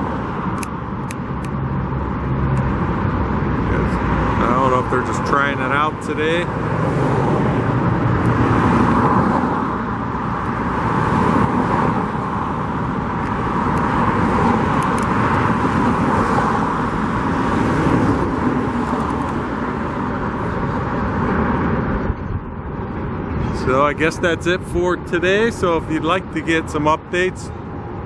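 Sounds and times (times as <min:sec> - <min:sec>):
road traffic passing: 0:00.0 - 0:28.0.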